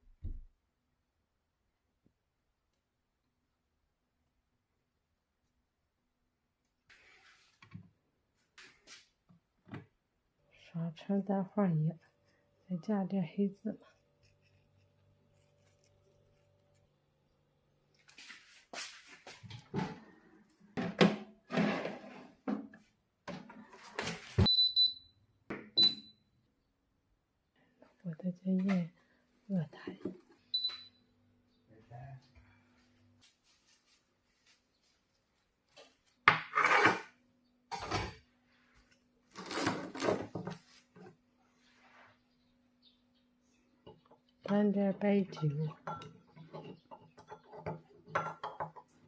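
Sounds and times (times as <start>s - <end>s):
appliance control panel beeping: 24.4s - 26.2s, 30.5s - 31.0s.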